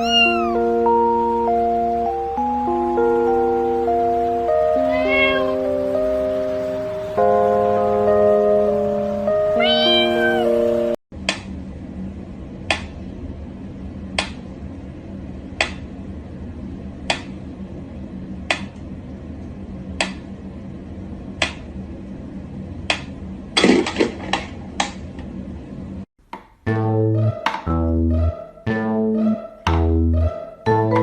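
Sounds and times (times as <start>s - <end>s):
steady low hum: 11.2s - 23.6s.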